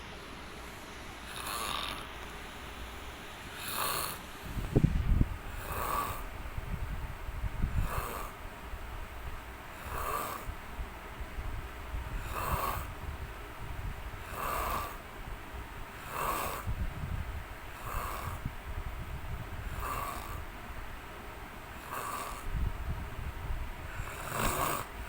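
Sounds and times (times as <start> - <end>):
man snoring: 1.2 - 2.2, 3.4 - 6.4, 7.6 - 8.4, 9.7 - 10.6, 12.0 - 13.1, 14.1 - 15.2, 15.9 - 18.6, 19.4 - 20.5, 21.7 - 22.7, 23.8 - 25.0.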